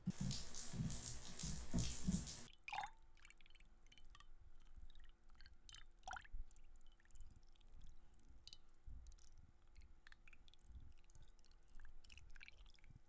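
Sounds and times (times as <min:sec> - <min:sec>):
water drips: 0:00.0 - 0:02.9.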